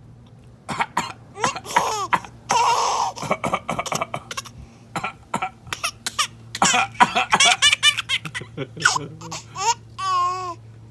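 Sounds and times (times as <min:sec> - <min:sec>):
baby coughing: 0:00.7 - 0:10.6
baby laughing: 0:01.4 - 0:04.6, 0:05.5 - 0:10.6.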